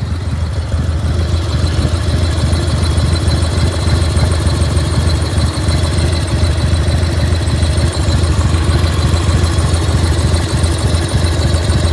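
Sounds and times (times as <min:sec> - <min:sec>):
motorcycle engine idling: 0:00.0 - 0:11.9.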